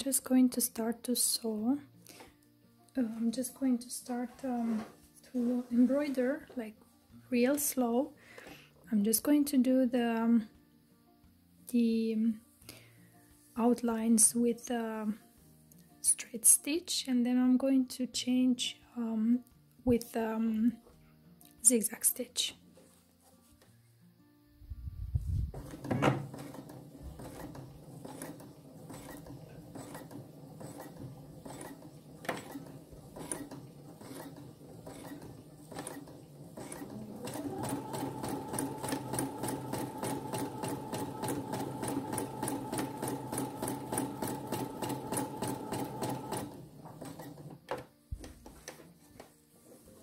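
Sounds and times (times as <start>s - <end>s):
sewing machine stitching: 25.5s - 47.7s.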